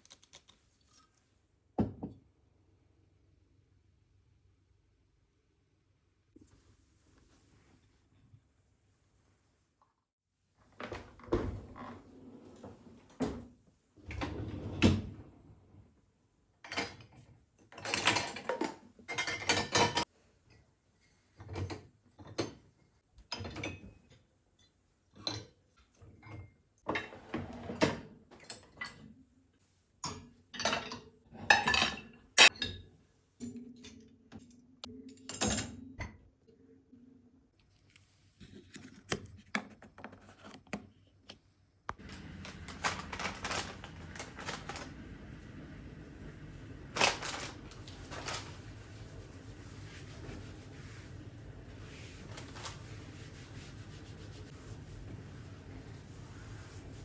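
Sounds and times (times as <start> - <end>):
dishes and utensils clinking: 16.7 - 22.7, 30.0 - 36.2.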